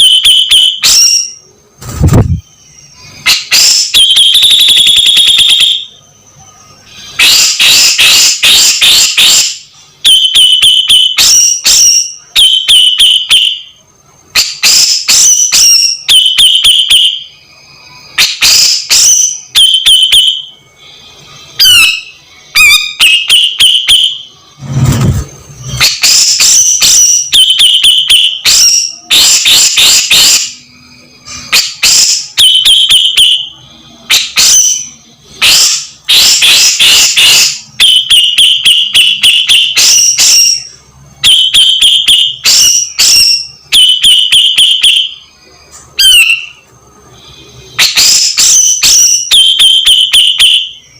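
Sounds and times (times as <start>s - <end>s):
bird calling with sharp notes: 14.3s - 24.7s.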